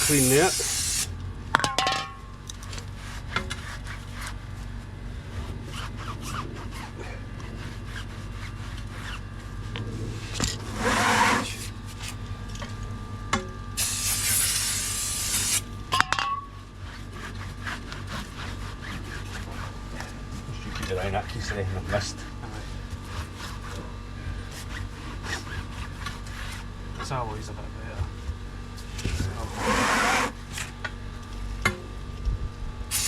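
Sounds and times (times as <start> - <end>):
aerosol spray hiss: 0.0 - 1.1, 13.8 - 15.6
scratchy rubbing on wheel rim: 0.0 - 1.1, 2.9 - 12.2, 13.8 - 15.7, 16.8 - 26.8, 28.8 - 30.8.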